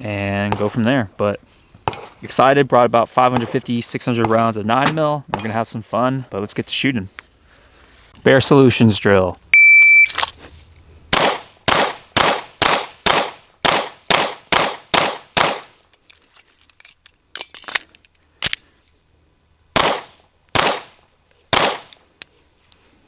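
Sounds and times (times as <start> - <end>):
pistol shots: 0.5 - 0.8, 1.9 - 2.1, 3.3 - 3.6, 11.1 - 15.7, 19.8 - 21.9.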